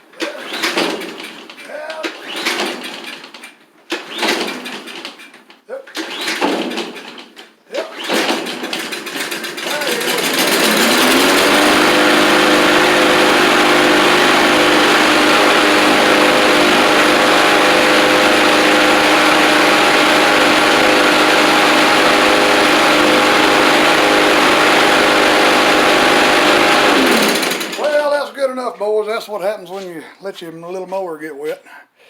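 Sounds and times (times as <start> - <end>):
lawn mower engine running: 8.1 - 28.3.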